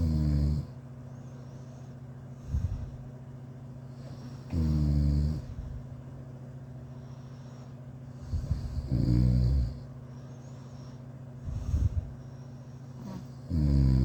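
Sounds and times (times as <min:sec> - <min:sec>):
person snoring: 0:00.0 - 0:00.7, 0:04.4 - 0:05.7, 0:08.2 - 0:09.9, 0:13.0 - 0:14.0
steady low hum: 0:00.0 - 0:14.0.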